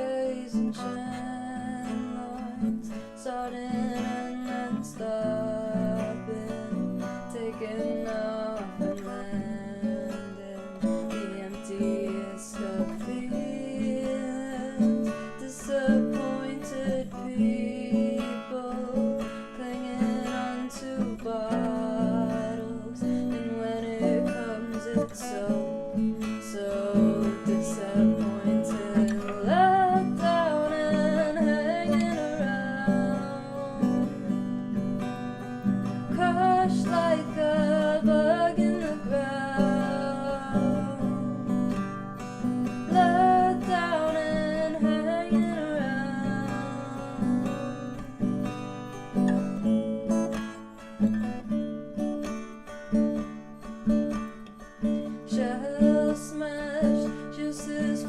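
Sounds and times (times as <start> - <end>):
acoustic guitar picking: 0.0 - 58.0.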